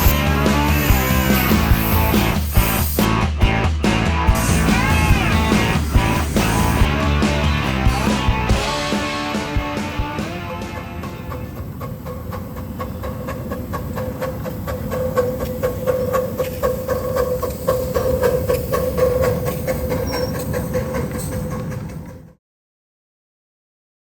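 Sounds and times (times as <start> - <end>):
train rumbling on rails: 0.0 - 22.4
rapid wheel clicking: 10.1 - 22.4.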